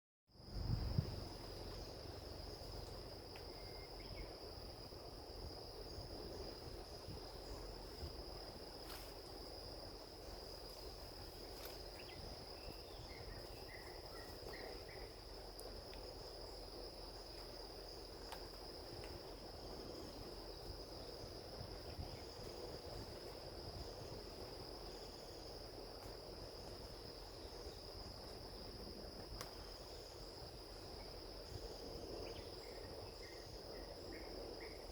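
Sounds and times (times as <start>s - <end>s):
insects trilling: 0.4s - 34.9s.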